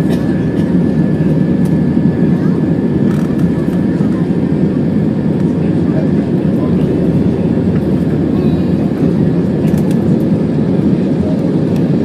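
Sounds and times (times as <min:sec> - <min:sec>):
airplane cabin engine roar: 0:00.0 - 0:12.0.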